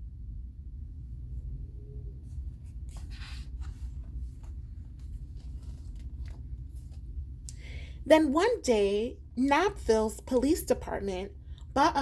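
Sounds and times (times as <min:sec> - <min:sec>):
low steady hum: 0:00.0 - 0:12.0
paper rustling: 0:02.3 - 0:07.3.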